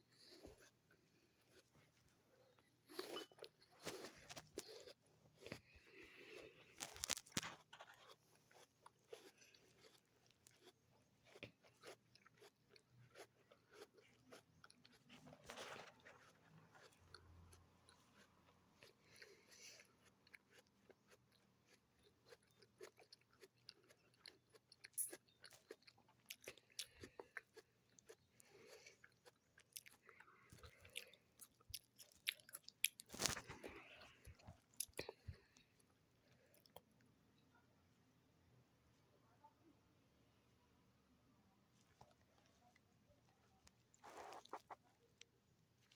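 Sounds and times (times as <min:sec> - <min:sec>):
person chewing an apple: 0:00.2 - 0:01.9, 0:02.5 - 0:35.7, 0:44.0 - 0:45.9
apple crunching: 0:02.9 - 0:15.1, 0:30.6 - 0:33.9.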